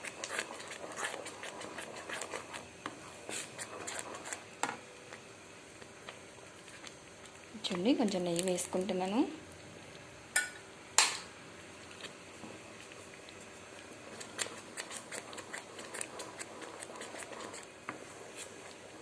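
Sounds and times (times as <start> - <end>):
metal spoon stirring and scraping: 3.3 - 4.4, 14.4 - 18.9.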